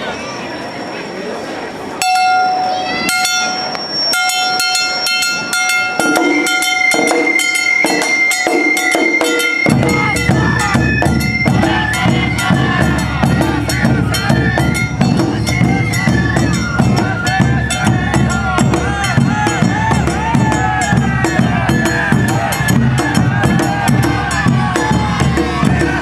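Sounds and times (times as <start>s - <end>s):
high flute melody: 2.0s - 26.0s
heavy drum beat: 8.5s - 26.0s.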